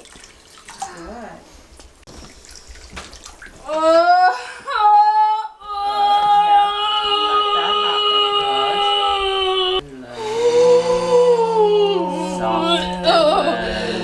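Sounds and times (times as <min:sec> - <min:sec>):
woman moaning: 0:03.7 - 0:14.0
woman holding a high tone: 0:07.0 - 0:14.0
woman crying out: 0:10.2 - 0:14.0.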